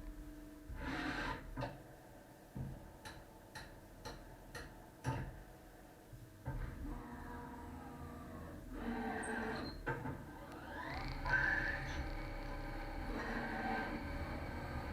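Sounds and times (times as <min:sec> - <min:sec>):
lathe machine hum: 0:10.3 - 0:14.9
steady machine tones: 0:10.4 - 0:14.9.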